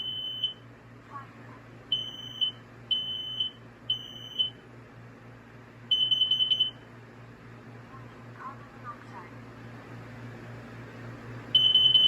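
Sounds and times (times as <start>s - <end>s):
smoke alarm beeps: 0.0s - 0.6s, 1.9s - 4.6s, 5.9s - 6.8s, 11.5s - 12.0s.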